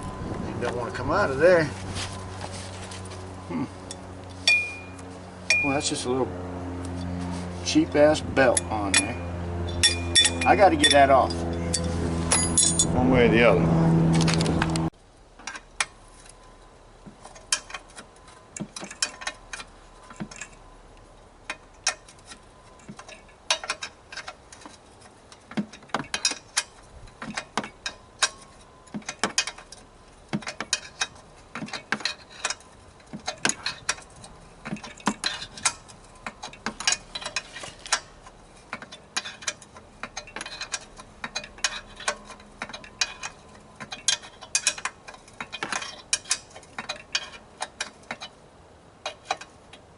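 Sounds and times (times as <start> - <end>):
hand tools clicking on metal: 8.4 - 12.9, 21.5 - 48.4, 49.0 - 49.9.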